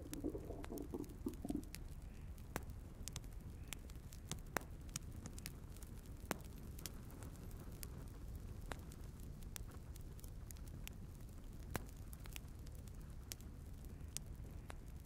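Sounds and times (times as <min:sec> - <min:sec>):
sharp pops of burning wood: 0:00.0 - 0:01.8
firewood crackling in a stove: 0:00.0 - 0:15.0
low rumble of flames: 0:00.0 - 0:15.0.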